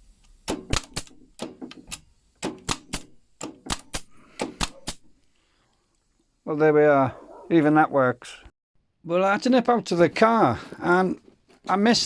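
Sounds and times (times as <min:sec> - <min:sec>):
pin nailer snapping: 0:00.4 - 0:05.2.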